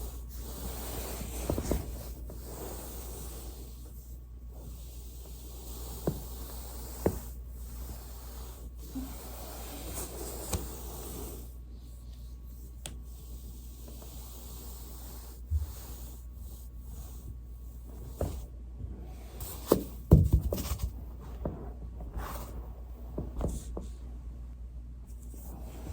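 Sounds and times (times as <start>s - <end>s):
body rustling on foam roller: 0.0s - 3.6s.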